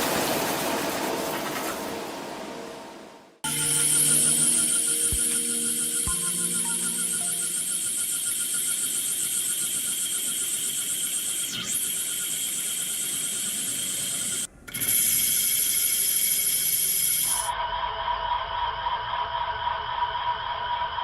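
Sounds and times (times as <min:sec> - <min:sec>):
machine tool whirring hiss: 0:03.5 - 0:17.5.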